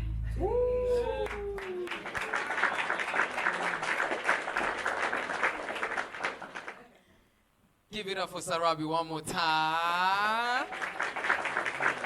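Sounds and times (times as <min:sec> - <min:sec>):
audience clapping: 0:01.1 - 0:07.0, 0:10.0 - 0:12.0.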